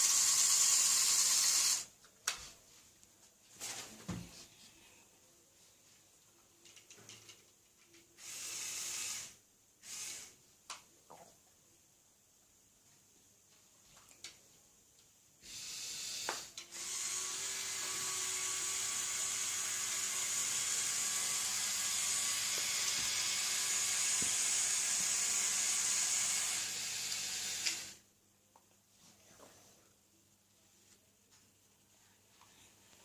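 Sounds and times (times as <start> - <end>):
toy electric motor whirring: 0.0 - 1.9, 8.2 - 10.4, 15.4 - 28.0.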